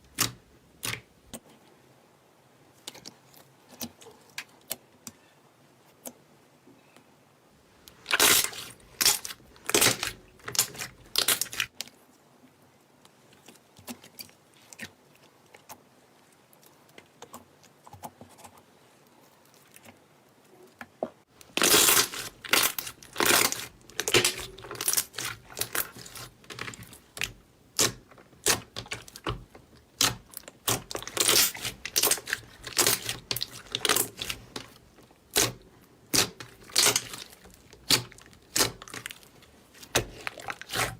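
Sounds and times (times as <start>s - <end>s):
slime crackling and popping: 7.9s - 11.8s, 21.4s - 40.9s.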